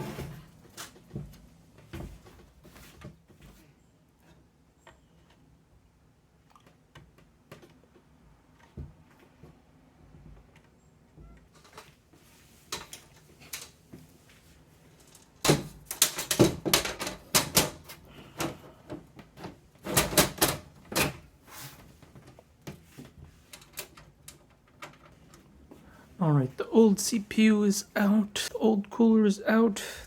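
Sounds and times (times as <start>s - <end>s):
clicks and clatter of hard parts: 12.7s - 13.8s, 15.0s - 21.3s.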